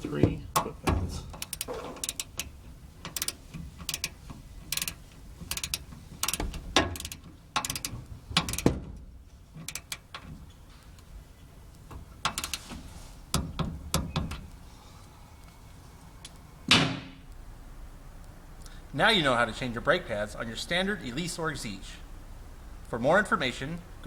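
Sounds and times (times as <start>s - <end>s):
ratcheting torque wrench clicking: 1.3s - 8.8s, 9.6s - 10.2s, 12.2s - 12.7s.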